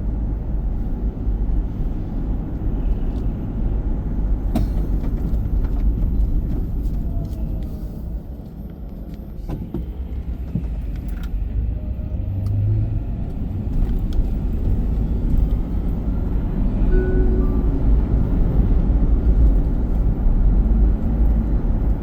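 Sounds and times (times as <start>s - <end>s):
road and engine rumble: 0.0s - 22.0s
brief low hum: 16.7s - 19.3s.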